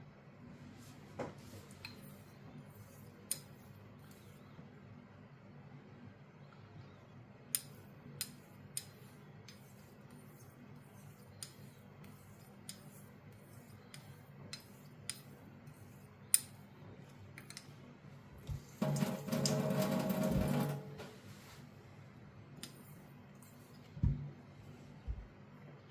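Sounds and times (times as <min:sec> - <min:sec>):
razor scraping on a hone: 0:08.2 - 0:16.6.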